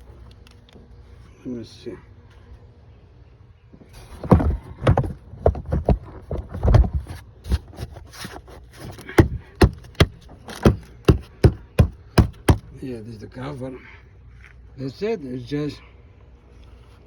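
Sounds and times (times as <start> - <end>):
plastic cover knocks and clicks: 9.0 - 12.6.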